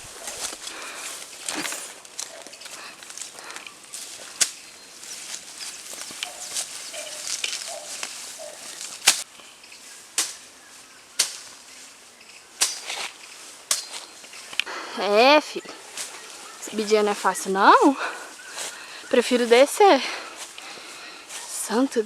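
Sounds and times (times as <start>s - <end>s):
twigs snapping: 0.0s - 9.5s, 10.1s - 14.7s, 15.7s - 17.3s
footsteps through dry brush: 0.0s - 22.0s
leaves rustling: 0.0s - 22.0s.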